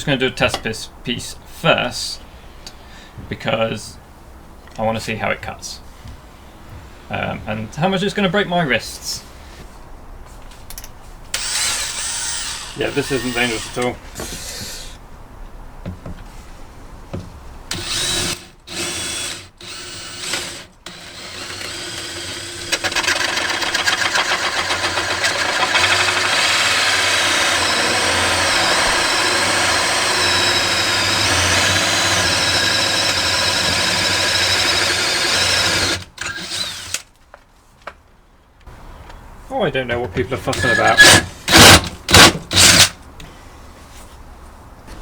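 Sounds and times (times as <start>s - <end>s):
power drill cutting with whine: 11.4s - 15.0s, 17.7s - 37.0s, 40.5s - 42.9s.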